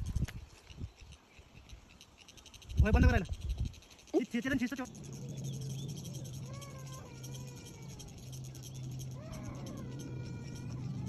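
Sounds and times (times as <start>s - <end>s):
low hum: 2.3s - 11.0s.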